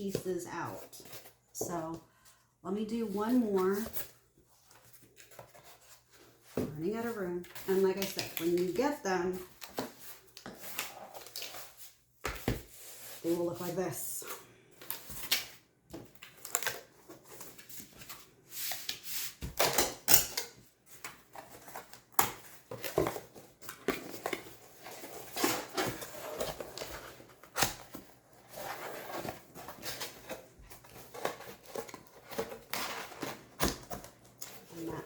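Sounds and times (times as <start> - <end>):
cardboard scraping and rustling: 21.2 - 34.9.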